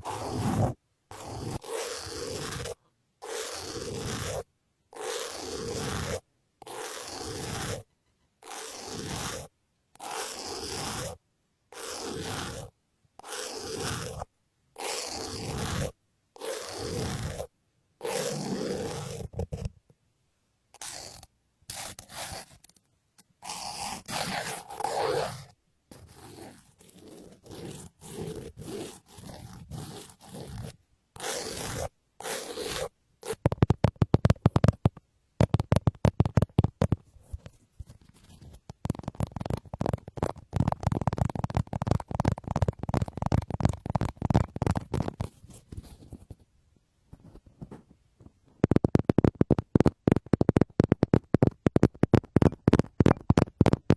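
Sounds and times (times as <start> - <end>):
scratchy strokes on microphone: 0.0 - 2.8, 5.0 - 11.2, 23.4 - 34.8, 35.5 - 46.5.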